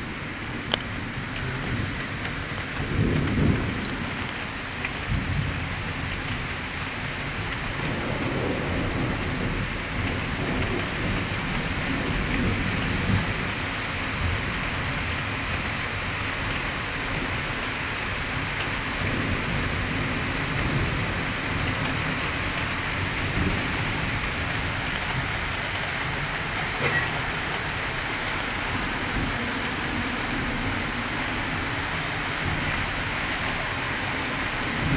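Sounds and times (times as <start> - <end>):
heavy rain falling: 0.0 - 34.9
thunder rumbling: 7.4 - 13.6, 18.9 - 34.9.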